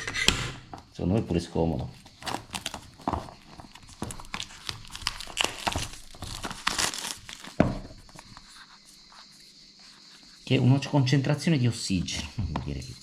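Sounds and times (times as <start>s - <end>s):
packaging crinkling and tearing: 2.0s - 7.7s.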